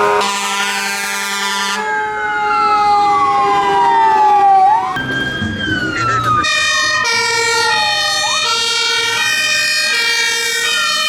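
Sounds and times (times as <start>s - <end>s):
fire engine siren yelp and wail: 0.0s - 11.0s
steady siren tone: 1.4s - 11.0s.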